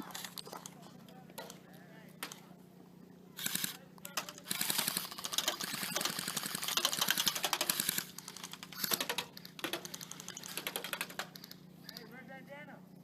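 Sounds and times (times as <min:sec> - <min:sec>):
airsoft guns firing full auto: 0:03.4 - 0:11.6.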